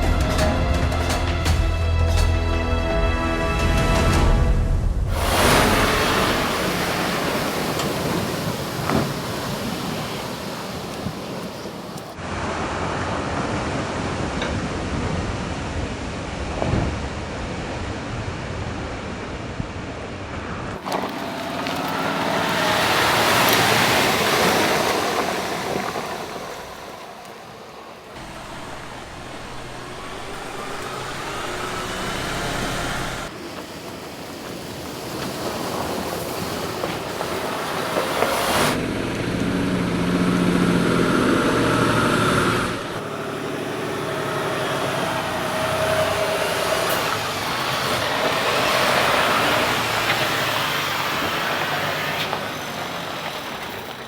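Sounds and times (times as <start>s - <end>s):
truck diesel engine under load: 20.7s - 54.0s.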